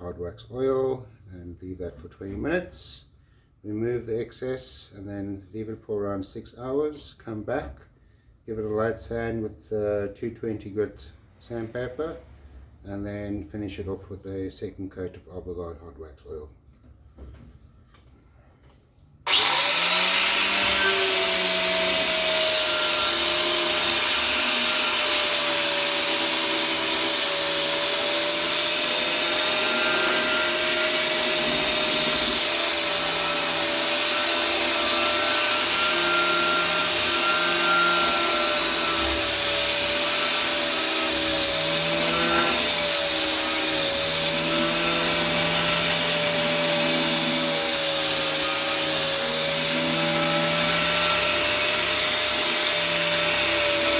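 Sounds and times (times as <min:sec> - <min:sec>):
electric sander motor whine: 0:19.3 - 0:53.9.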